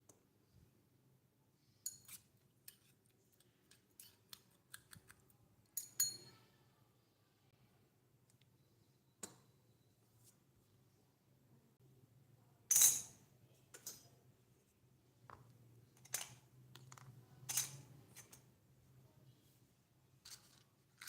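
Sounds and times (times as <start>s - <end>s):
small utensils clicking and clinking: 1.8s - 6.4s, 12.7s - 14.1s, 16.0s - 18.5s, 20.2s - 21.0s.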